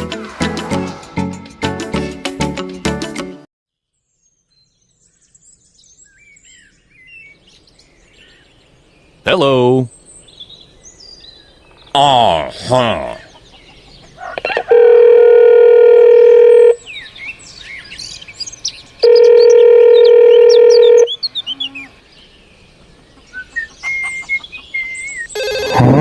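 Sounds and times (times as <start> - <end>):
birds chirping: 4.7 - 14.8, 16.8 - 26.0.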